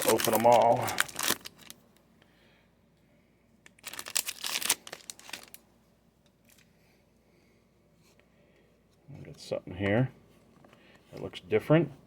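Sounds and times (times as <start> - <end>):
foil wrapper crinkling and tearing: 0.0 - 1.8, 3.6 - 5.6.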